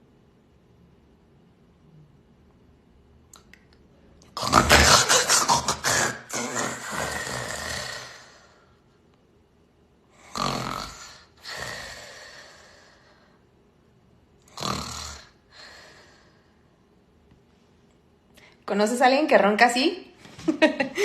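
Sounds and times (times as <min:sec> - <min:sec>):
person snoring: 0:04.4 - 0:08.8, 0:10.2 - 0:13.3, 0:14.5 - 0:16.5.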